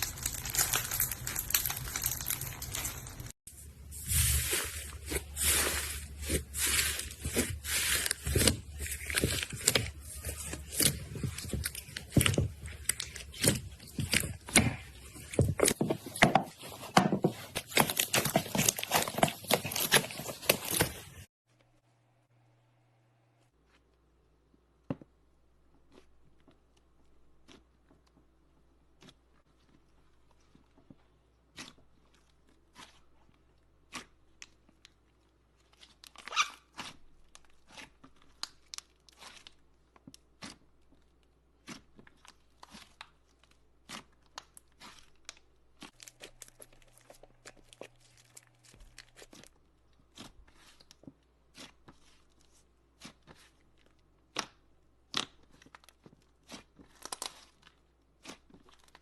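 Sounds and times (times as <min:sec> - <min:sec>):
slime popping and crackling: 0:00.0 - 0:03.3, 0:04.2 - 0:16.2.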